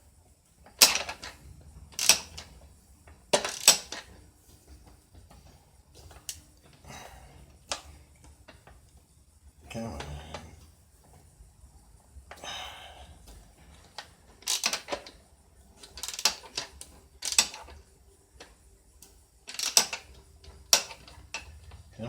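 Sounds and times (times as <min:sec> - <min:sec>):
hardware clicks and knocks: 0:00.7 - 0:01.4, 0:02.0 - 0:04.2, 0:13.3 - 0:15.2, 0:15.8 - 0:17.8, 0:19.5 - 0:21.9.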